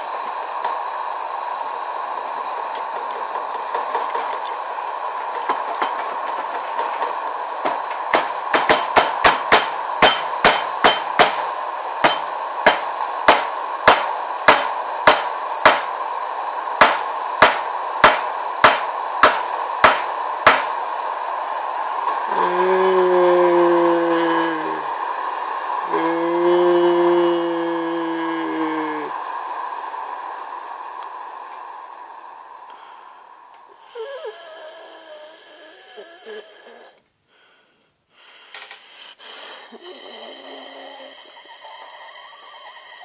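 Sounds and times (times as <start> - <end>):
steady hiss: 0.0 - 43.0
sharp hammer-like knocks: 8.1 - 11.4, 12.0 - 15.9, 16.8 - 20.7.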